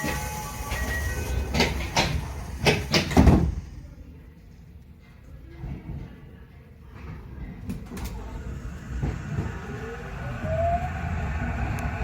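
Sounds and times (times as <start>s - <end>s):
train low rumble: 0.0s - 12.0s
traction motor whine: 8.3s - 12.0s.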